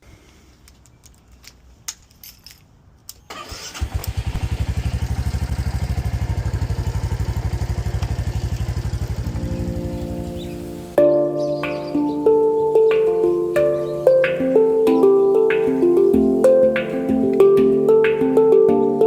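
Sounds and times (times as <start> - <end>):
electric starter cranking: 3.3 - 4.9
motorcycle engine idling: 4.2 - 10.6.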